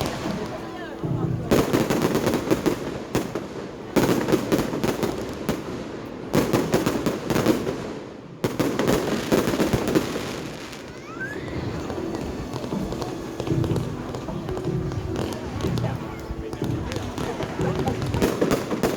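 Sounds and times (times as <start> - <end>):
fireworks crackling: 0.0 - 18.9.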